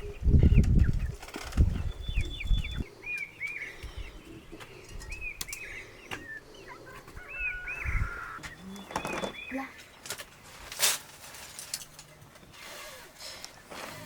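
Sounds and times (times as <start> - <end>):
small birds chirping: 0.0 - 10.6.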